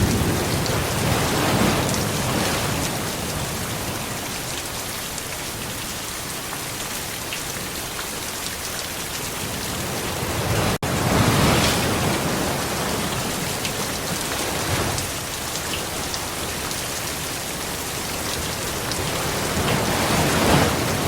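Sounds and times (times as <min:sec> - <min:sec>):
low rumble of thunder: 0:00.0 - 0:04.0
steady rain falling: 0:00.0 - 0:21.0.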